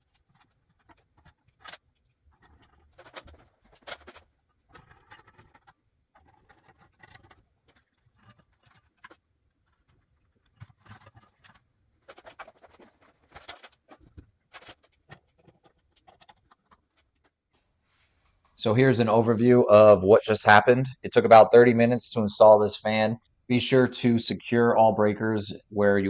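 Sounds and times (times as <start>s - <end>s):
objects rustling and clicking: 0.0s - 18.6s.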